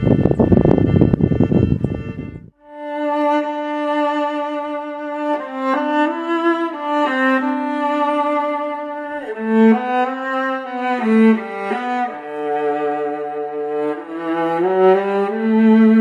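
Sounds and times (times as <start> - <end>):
solo viola slow bowed melody: 0.0 - 16.0.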